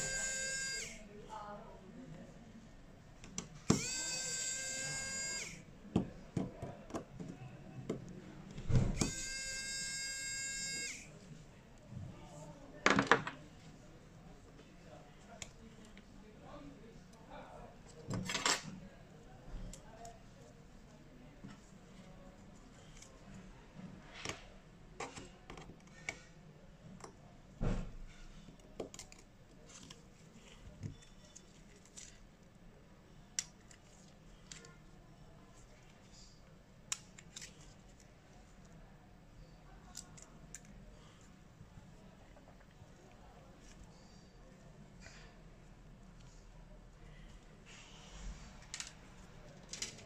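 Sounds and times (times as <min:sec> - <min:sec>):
small electric motor whining: 0:00.0 - 0:01.0, 0:03.7 - 0:05.6, 0:09.0 - 0:11.1.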